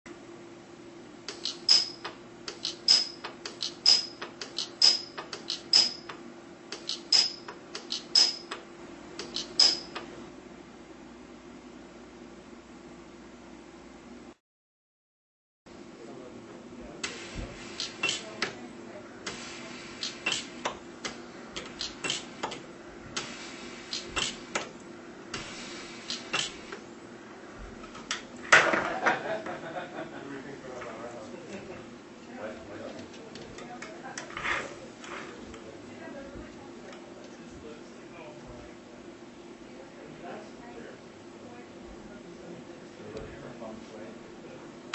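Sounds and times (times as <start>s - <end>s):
steady electrical hum: 0.1s - 14.4s, 15.7s - 44.9s
welder snap with high ring: 1.3s - 6.2s, 6.8s - 8.5s
welder snapping: 6.7s - 8.6s, 20.0s - 22.6s.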